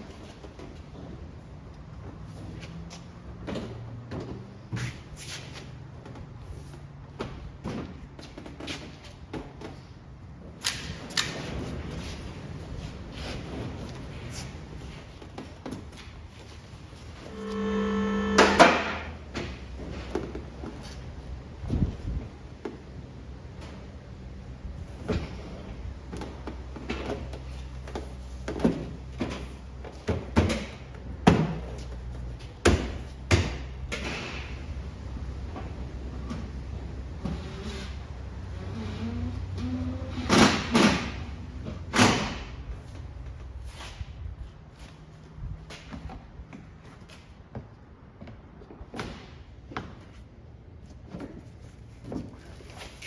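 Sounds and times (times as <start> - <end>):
steady low hum: 17.1 - 19.4.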